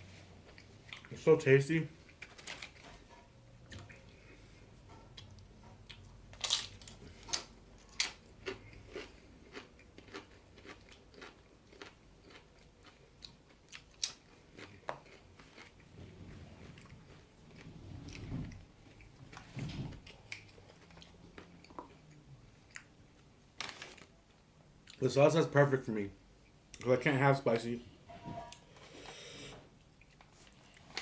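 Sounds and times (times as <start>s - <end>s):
person chewing crunchy food: 5.2s - 19.4s, 20.0s - 23.0s.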